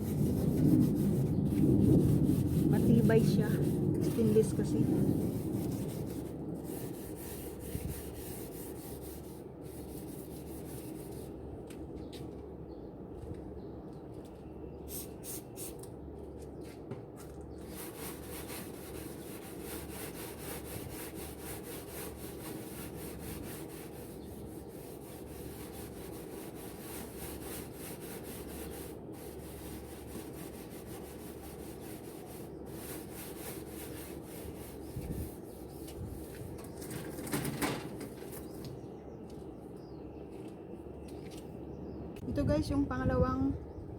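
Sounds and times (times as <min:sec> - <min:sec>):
scrubbing a metal grill: 0:00.0 - 0:11.3, 0:17.6 - 0:38.6.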